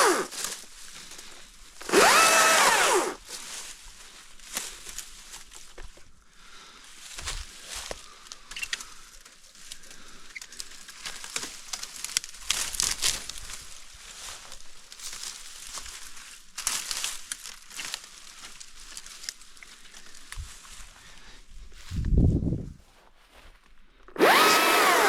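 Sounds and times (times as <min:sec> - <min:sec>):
brush crackling and rustling: 0:00.0 - 0:06.0, 0:10.5 - 0:20.9
branches snapping: 0:10.5 - 0:13.6, 0:16.6 - 0:19.4.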